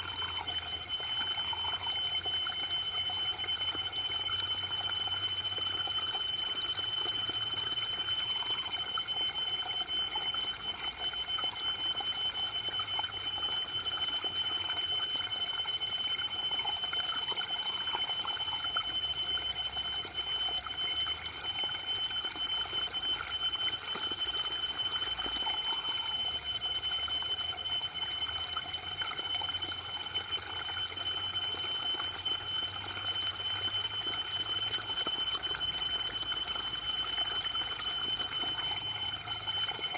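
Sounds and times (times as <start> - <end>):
high-pitched tone: 0.0 - 2.0.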